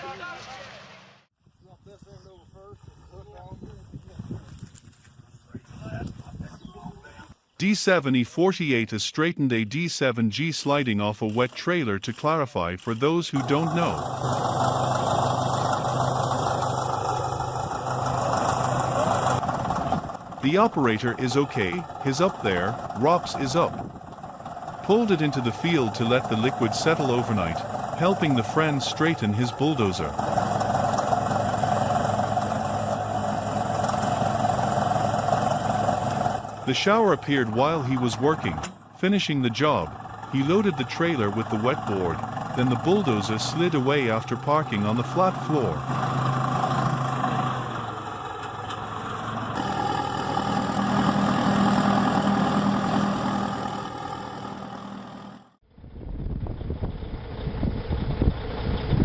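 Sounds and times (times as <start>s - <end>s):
wind rumble on microphone: 1.4s - 7.4s, 23.7s - 24.2s, 55.7s - 59.0s
diesel engine rumbling: 12.8s - 59.0s.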